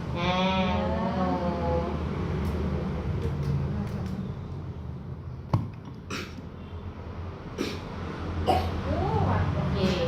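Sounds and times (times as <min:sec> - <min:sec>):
child coughing: 0:06.1 - 0:06.4, 0:07.6 - 0:07.9, 0:08.5 - 0:08.8.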